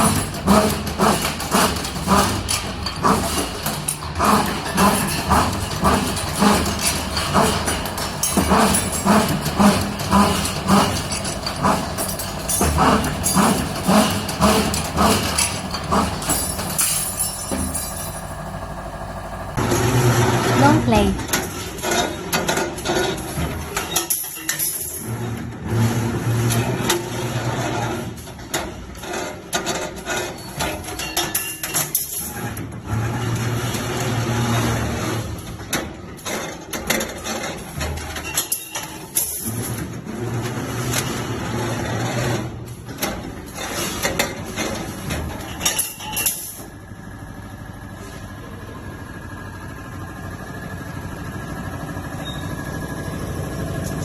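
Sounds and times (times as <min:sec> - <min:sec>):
bending machine clattering: 0:00.0 - 0:19.9, 0:35.4 - 0:47.9.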